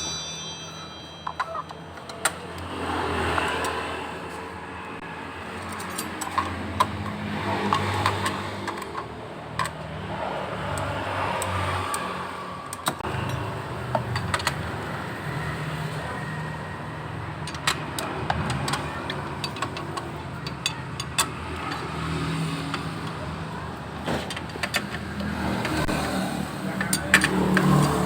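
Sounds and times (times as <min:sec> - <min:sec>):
metallic clicks of hand tools: 0:05.6 - 0:09.8.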